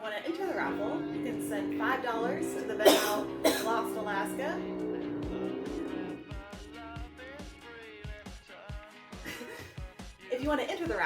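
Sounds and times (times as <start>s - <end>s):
held chord: 0.3s - 6.3s.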